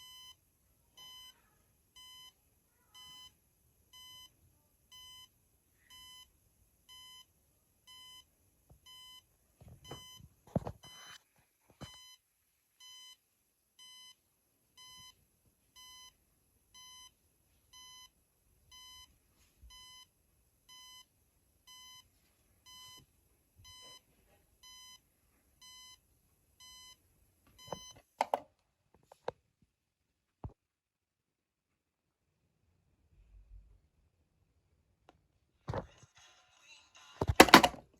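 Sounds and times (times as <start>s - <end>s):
clicks and knocks: 27.7s - 28.5s, 37.2s - 37.8s
knocks: 37.2s - 37.8s.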